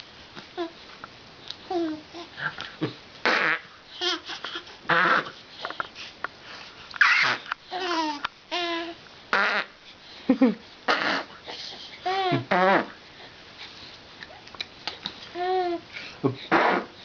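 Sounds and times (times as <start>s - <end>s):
baby babbling and giggling: 1.7s - 2.6s, 3.9s - 5.8s, 7.0s - 9.0s, 11.2s - 12.5s, 15.3s - 15.9s.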